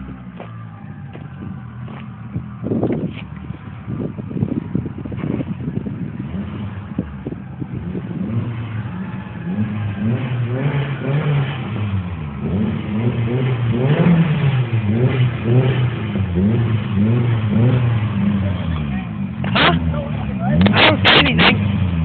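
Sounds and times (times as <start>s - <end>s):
car engine revving in blips: 0.0s - 22.0s.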